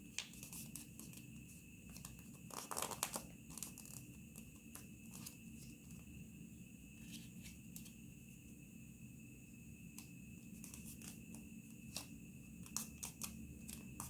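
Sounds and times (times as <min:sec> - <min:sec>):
paper crinkling and folding: 0:01.9 - 0:04.0.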